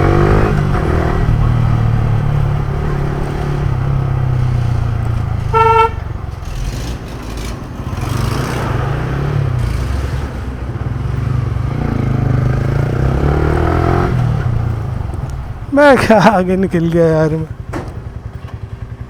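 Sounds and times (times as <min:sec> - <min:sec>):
motorcycle engine running: 0:00.0 - 0:19.0
vehicle horn honking: 0:05.2 - 0:06.6.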